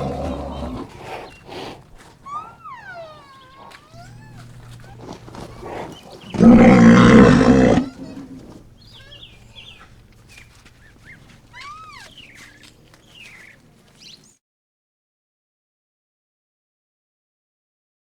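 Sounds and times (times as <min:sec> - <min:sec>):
rhinoceros bellow: 0:00.0 - 0:13.6.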